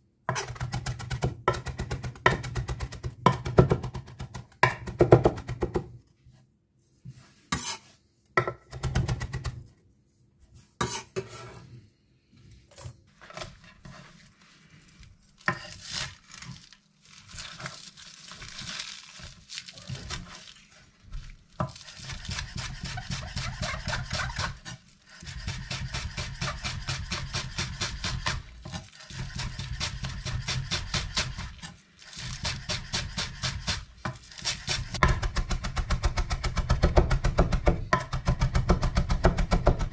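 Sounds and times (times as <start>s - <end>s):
knife chopping on cutting board: 0.3s - 5.9s, 32.4s - 39.9s.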